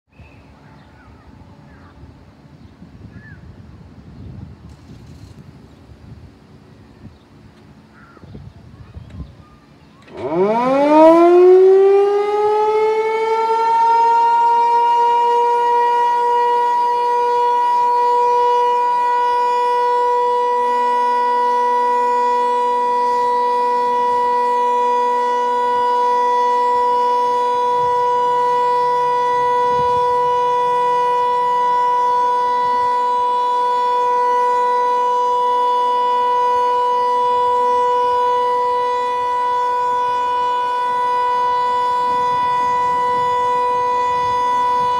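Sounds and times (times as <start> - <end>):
warning siren wailing: 10.0 - 44.9.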